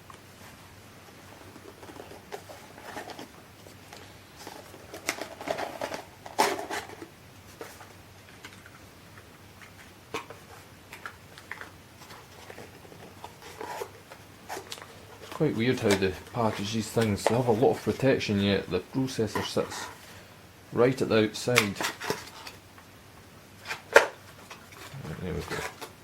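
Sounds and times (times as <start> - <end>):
plastic packaging clicks and rustles: 1.3 - 20.1, 21.4 - 22.7, 23.6 - 26.0
sharp plastic crack: 23.6 - 26.0.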